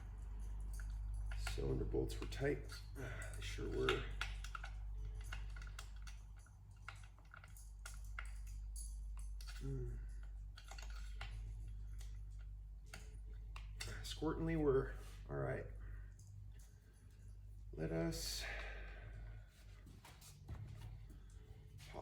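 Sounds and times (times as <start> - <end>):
hand tools clicking and tapping: 0.0 - 14.5
low hum: 0.0 - 22.0.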